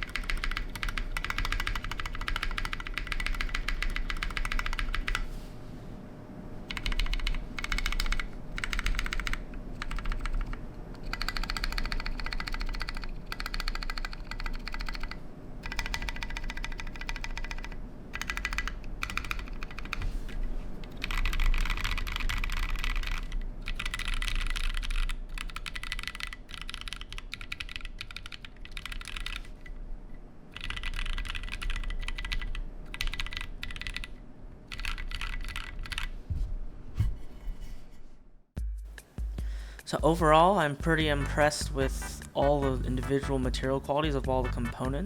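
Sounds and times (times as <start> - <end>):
mechanical keyboard key clacks: 0.0 - 5.2, 6.7 - 20.0, 20.9 - 29.7, 30.6 - 34.1.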